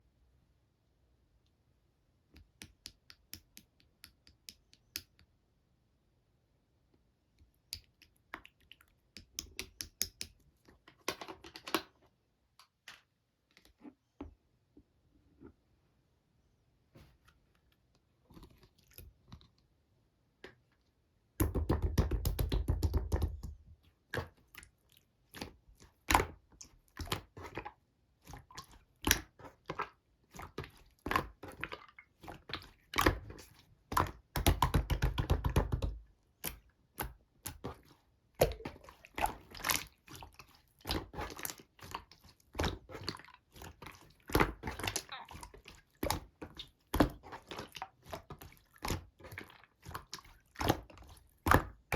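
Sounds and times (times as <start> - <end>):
rapid crackling of slime: 24.2 - 51.9
slime squished by hand: 36.4 - 51.9.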